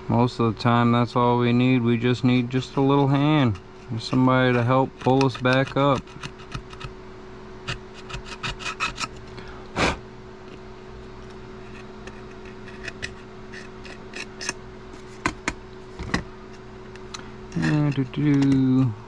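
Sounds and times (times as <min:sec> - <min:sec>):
screwdriver scraping adhesive: 0:02.6 - 0:06.9, 0:07.7 - 0:09.2, 0:11.6 - 0:15.3, 0:17.5 - 0:18.8.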